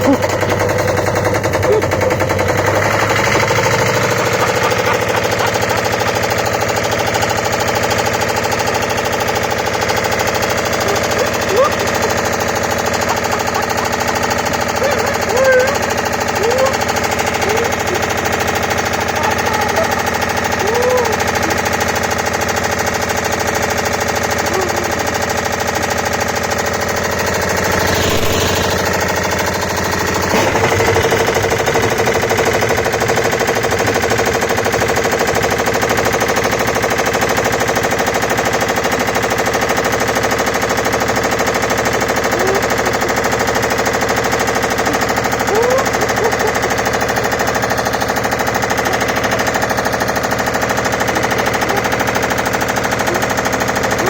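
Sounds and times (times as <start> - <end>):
rocks banging in washing machine: 29.8 - 35.3.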